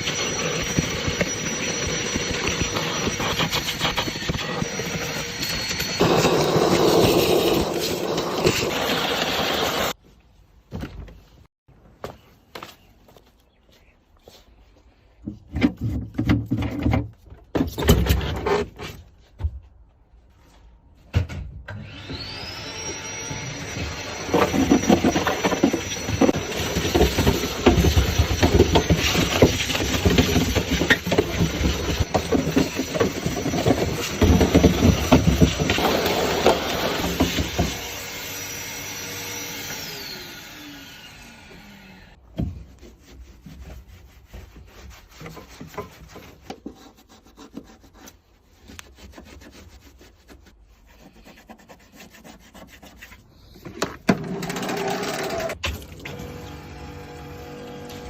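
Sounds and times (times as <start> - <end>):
brush scrubbing car surface: 42.4 - 53.6.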